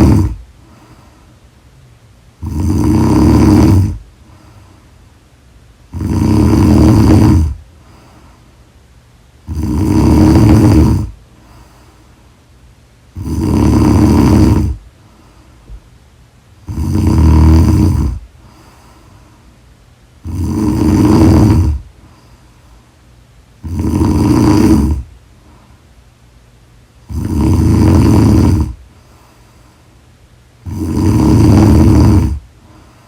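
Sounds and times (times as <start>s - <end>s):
loud snoring: 0.0s - 0.4s, 2.4s - 4.0s, 5.9s - 7.6s, 9.4s - 11.2s, 13.1s - 14.8s, 16.6s - 18.2s, 20.2s - 21.9s, 23.6s - 25.1s, 27.0s - 28.8s, 30.6s - 32.5s.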